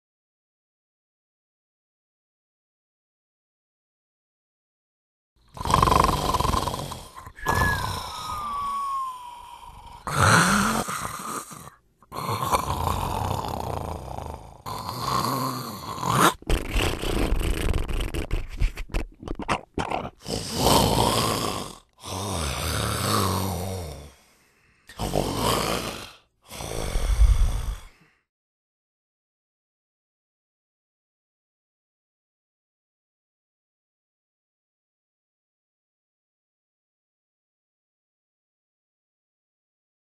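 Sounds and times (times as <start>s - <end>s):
person snoring loudly: 5.5s - 18.4s, 19.5s - 24.2s, 24.9s - 28.2s
whistling snore: 5.5s - 18.4s, 20.2s - 24.2s, 24.9s - 28.0s
short chopped snorts: 15.1s - 21.6s.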